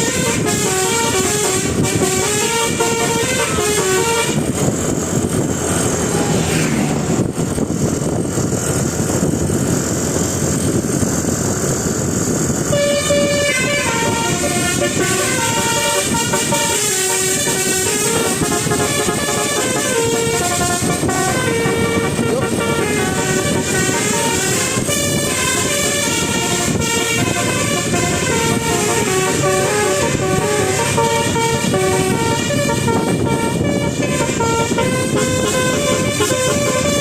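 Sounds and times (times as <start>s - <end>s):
electric horn playing a tune: 0.0s - 4.6s, 12.7s - 37.0s
vehicle noise: 0.0s - 37.0s.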